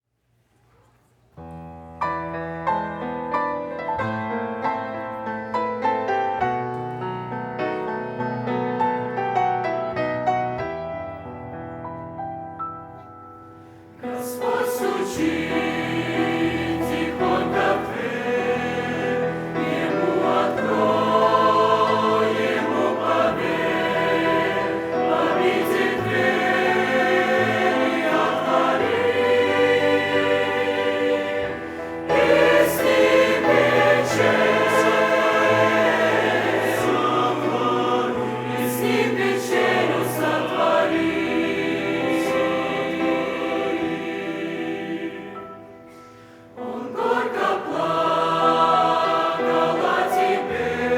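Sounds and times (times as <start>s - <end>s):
choir singing a hymn: 13.5s - 50.9s.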